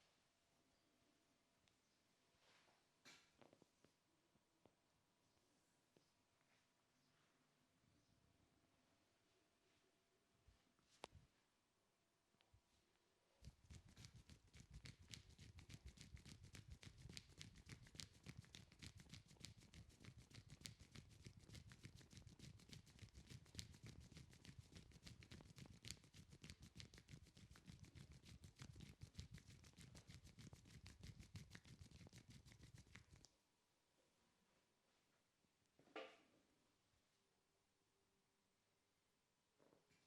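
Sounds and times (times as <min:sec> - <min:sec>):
hands slapping and tapping skin: 0:13.4 - 0:33.3.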